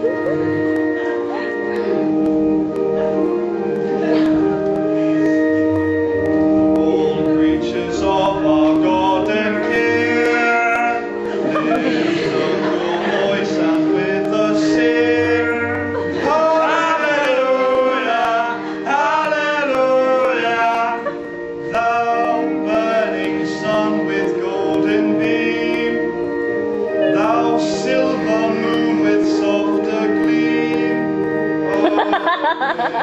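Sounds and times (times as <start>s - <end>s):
held chords: 0.0s - 33.0s
voices singing a hymn: 6.7s - 33.0s.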